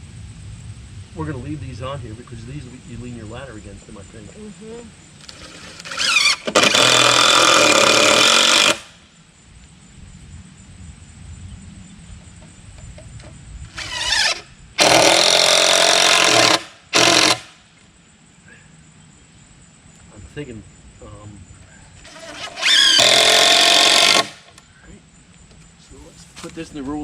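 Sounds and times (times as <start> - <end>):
power driver driving screws into wood: 5.2 - 9.0, 13.7 - 17.6, 22.0 - 24.6.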